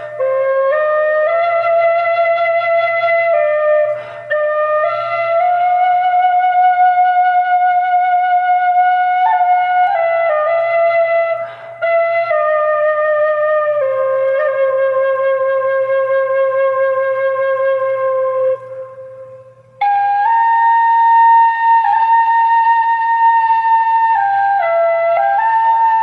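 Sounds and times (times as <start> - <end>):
flute playing slow melody: 0.0 - 26.0.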